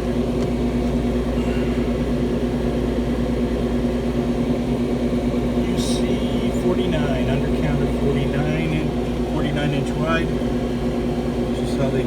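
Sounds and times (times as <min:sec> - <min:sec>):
machine hum: 0:00.0 - 0:12.0.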